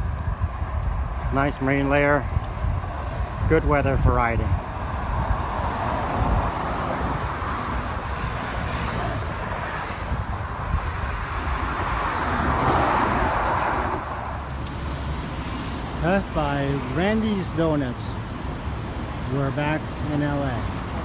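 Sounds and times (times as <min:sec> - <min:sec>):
wind rumbling on microphone: 0:00.0 - 0:15.9
road traffic going by: 0:00.0 - 0:21.0
vehicle passing loudly: 0:04.4 - 0:21.0.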